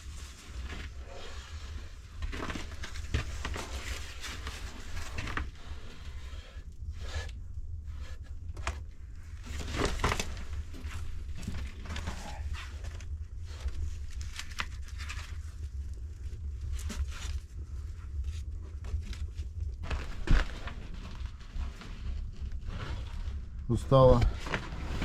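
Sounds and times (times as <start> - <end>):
low fire rumble: 0.0 - 25.0
wood fire crackling: 19.2 - 25.0.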